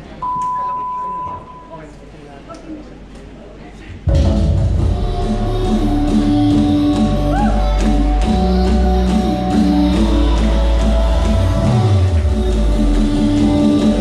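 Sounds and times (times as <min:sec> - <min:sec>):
worship band music: 0:04.1 - 0:14.0.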